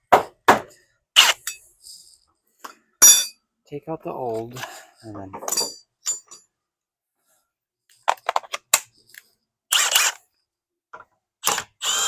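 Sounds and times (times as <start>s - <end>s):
tools and metal hardware clicking: 1.4s - 1.7s, 3.0s - 3.4s, 5.4s - 6.5s.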